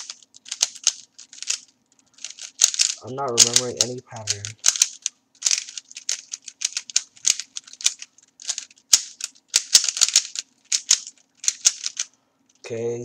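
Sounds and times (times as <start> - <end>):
puzzle cube clicking: 0.0 - 12.1.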